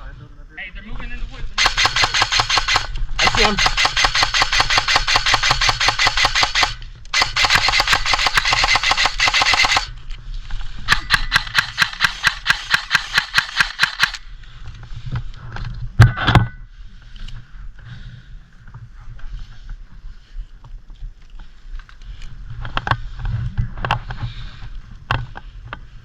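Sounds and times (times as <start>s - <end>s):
airsoft gun firing bursts: 1.6s - 9.9s, 10.9s - 14.2s.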